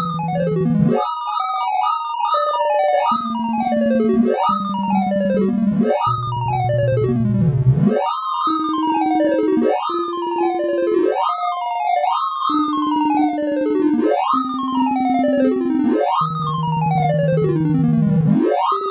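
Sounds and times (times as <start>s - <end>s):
rapid synthesized beeps: 0.0s - 1.1s, 2.7s - 11.0s, 16.1s - 18.9s.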